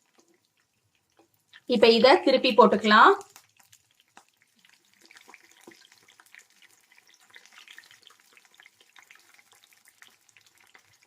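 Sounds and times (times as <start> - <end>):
food deep-frying in hot oil: 0.0 - 11.0.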